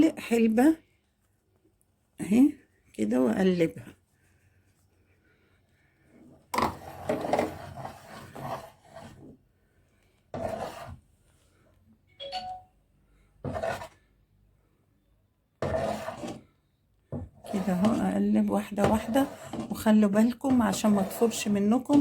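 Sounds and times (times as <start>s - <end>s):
spoon scraping a pot: 10.4s - 11.0s, 13.5s - 14.0s, 15.6s - 16.5s, 17.2s - 22.0s.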